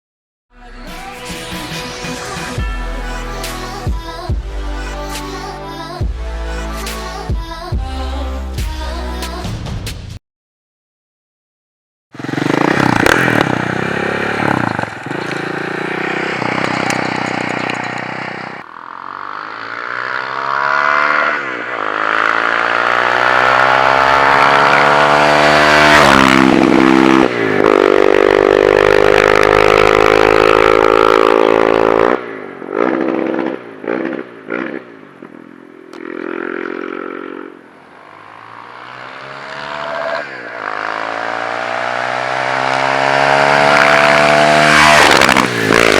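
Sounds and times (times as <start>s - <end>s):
motorcycle engine accelerating: 12.1s - 45.9s
motorcycle throttle blips: 12.2s - 22.4s.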